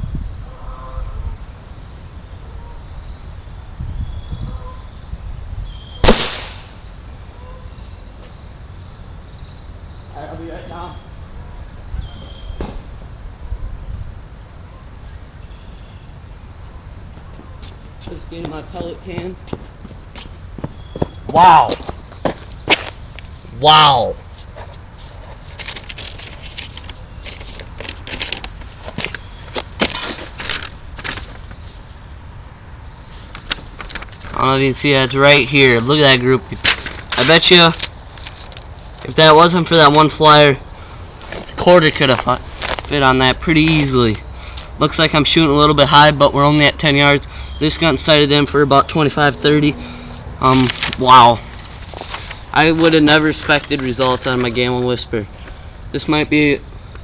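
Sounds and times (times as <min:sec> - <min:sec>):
air rifle shot: 0:06.0 - 0:06.9
rustling and crackling of handling: 0:24.2 - 0:32.0, 0:33.1 - 0:35.6, 0:36.4 - 0:40.1, 0:41.1 - 0:43.0, 0:50.0 - 0:55.6.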